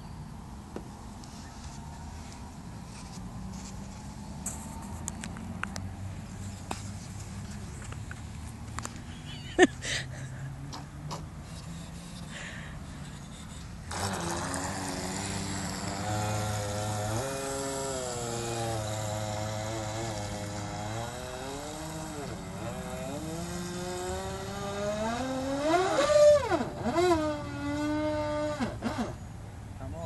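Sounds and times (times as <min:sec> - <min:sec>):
remote-control boat motor revving: 0:13.2 - 0:29.2.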